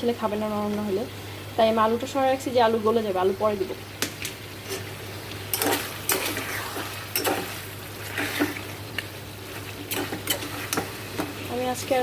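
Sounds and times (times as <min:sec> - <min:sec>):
spoon scraping a cooking pot: 0:09.9 - 0:10.8.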